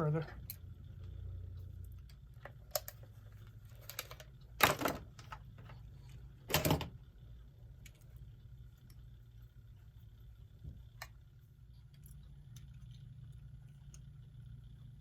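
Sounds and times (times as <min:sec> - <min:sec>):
faint low hum: 0:00.0 - 0:15.0.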